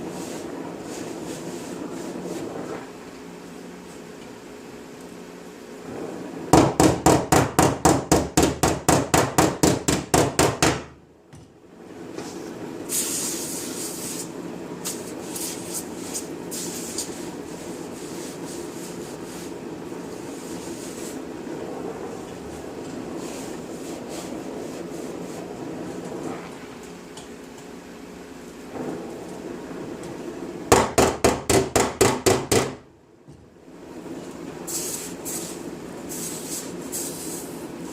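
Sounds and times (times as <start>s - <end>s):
short high hissing bursts: 12.9s - 17.2s, 34.7s - 37.6s.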